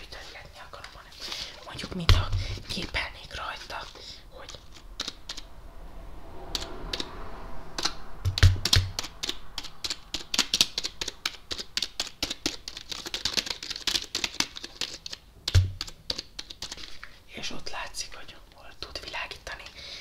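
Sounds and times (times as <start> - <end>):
keyboard typing clatter: 4.5 - 5.4, 7.8 - 17.0.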